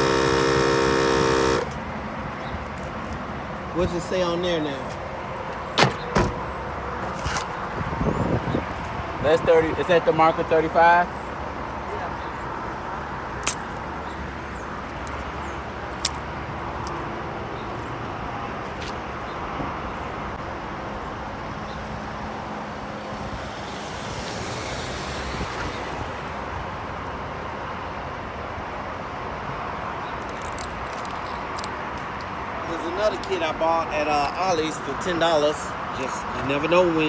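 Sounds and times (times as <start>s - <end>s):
road traffic noise: 0.0s - 37.0s
vehicle passing: 21.8s - 27.3s.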